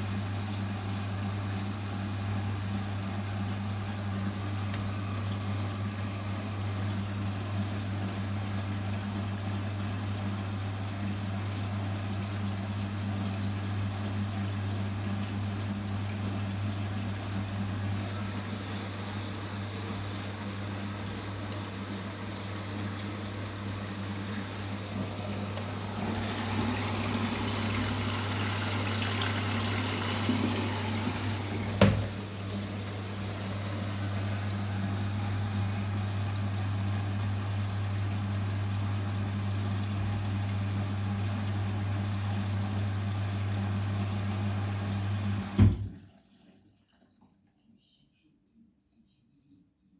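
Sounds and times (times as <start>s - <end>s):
washing machine humming: 0.0s - 47.7s
water rushing in: 24.4s - 36.0s.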